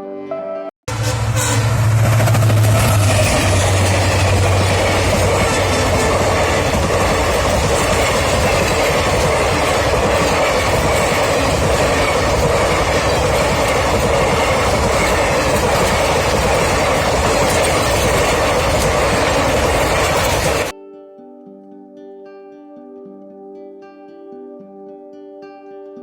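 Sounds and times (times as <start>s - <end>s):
train rumbling on track: 0.9s - 20.7s.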